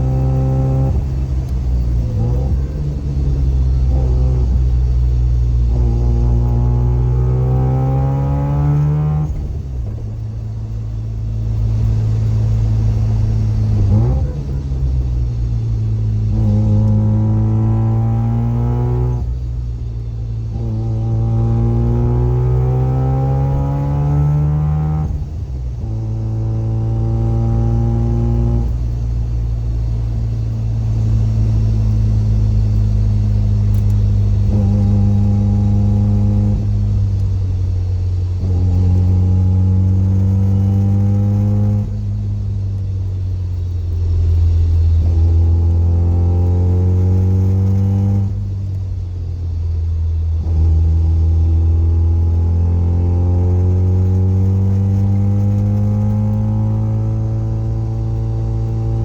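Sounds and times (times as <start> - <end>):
differential gear whine: 0.0 - 59.0
rotary engine and loud exhaust: 0.0 - 59.0.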